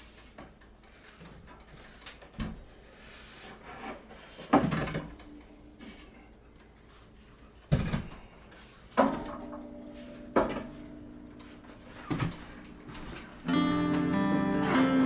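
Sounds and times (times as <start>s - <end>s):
strummed acoustic guitar music: 9.3s - 15.0s.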